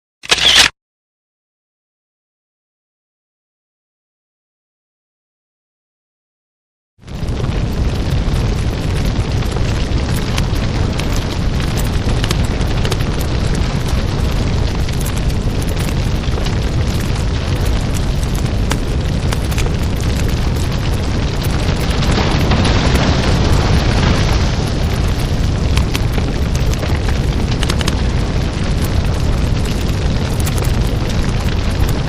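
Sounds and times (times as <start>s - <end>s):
large fire crackling and popping: 7.0s - 32.0s.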